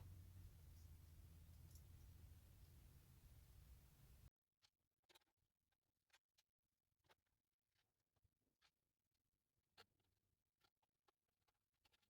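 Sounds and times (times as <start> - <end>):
faint clicks: 0.0 - 4.3
faint room tone hum: 0.0 - 4.3.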